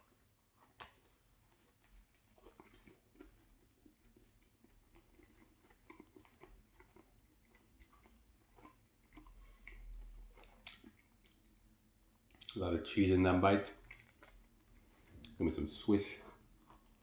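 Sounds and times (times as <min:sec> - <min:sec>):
close-up chewing: 0:00.0 - 0:17.0
wet mouth clicks and smacks: 0:02.4 - 0:12.6.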